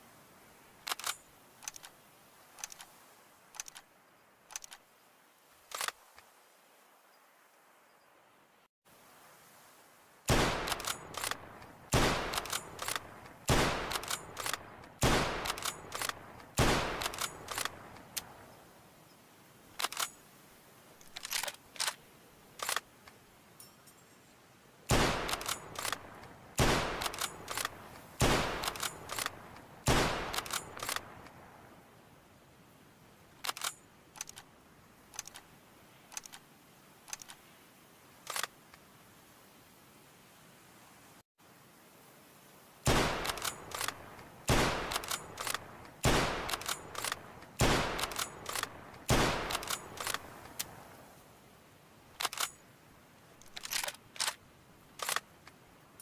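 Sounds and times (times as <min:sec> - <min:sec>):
rifle bolt clicks: 0:00.8 - 0:01.9, 0:25.0 - 0:31.3, 0:33.4 - 0:34.4, 0:42.9 - 0:50.7, 0:52.2 - 0:52.6, 0:53.4 - 0:54.4, 0:55.0 - 0:55.6
rifle shots with ringing tail: 0:44.5 - 0:45.4, 0:46.0 - 0:46.9, 0:47.6 - 0:48.5, 0:49.1 - 0:50.0.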